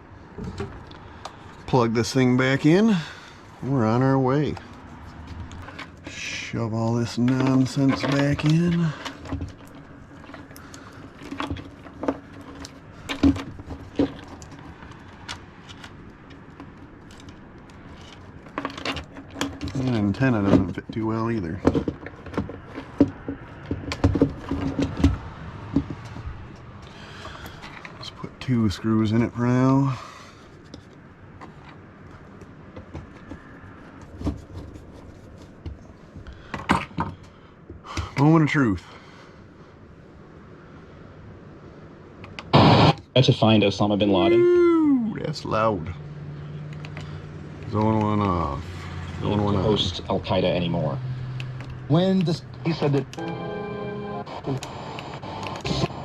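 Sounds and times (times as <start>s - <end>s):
stereo and wiring clicks and knocks: 7.2s - 26.2s.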